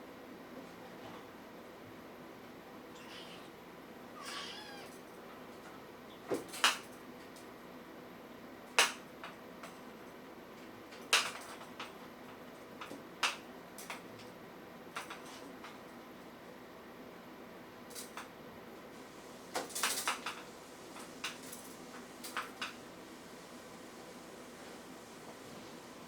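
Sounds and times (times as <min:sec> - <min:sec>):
kitten mewing: 0:02.9 - 0:03.6, 0:04.2 - 0:05.0.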